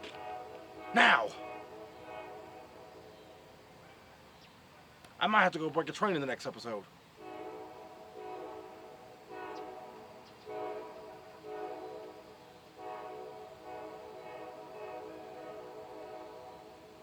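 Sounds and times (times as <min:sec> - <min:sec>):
train horn blasts: 0:00.0 - 0:03.7, 0:07.2 - 0:17.0.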